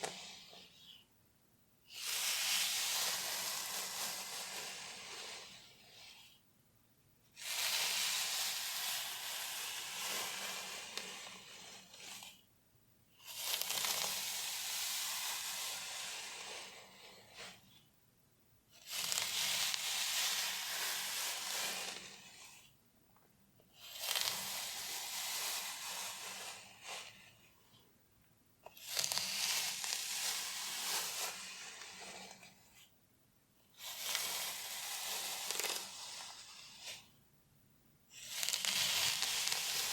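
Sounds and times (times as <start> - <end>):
hair and scalp scratching: 2.0 - 5.4, 13.3 - 17.6, 18.9 - 22.2, 23.9 - 27.2, 28.8 - 32.6, 33.8 - 37.1, 38.3 - 39.9.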